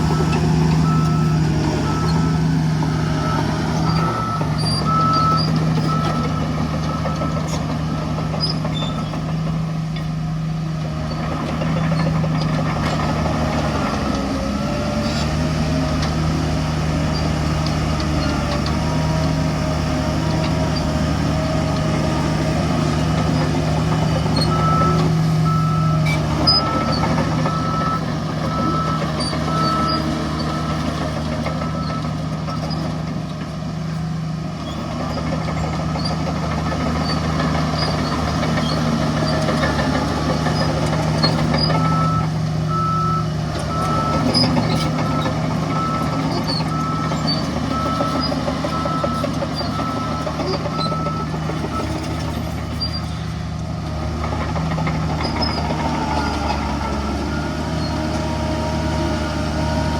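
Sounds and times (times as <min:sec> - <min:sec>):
reversing alarm beeping: 0:00.0 - 0:07.5, 0:23.6 - 0:32.8, 0:41.2 - 0:52.1, 0:55.5 - 0:58.0
heavy diesel machinery running: 0:00.0 - 0:59.9.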